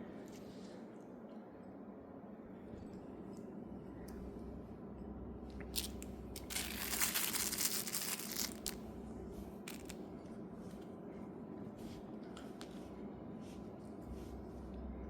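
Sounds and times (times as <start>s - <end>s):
crinkling rustling: 5.8s - 8.8s.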